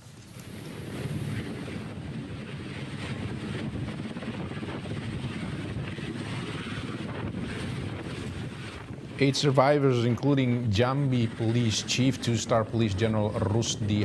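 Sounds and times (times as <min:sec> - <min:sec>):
helicopter rotor and engine rumble: 0:00.7 - 0:14.0.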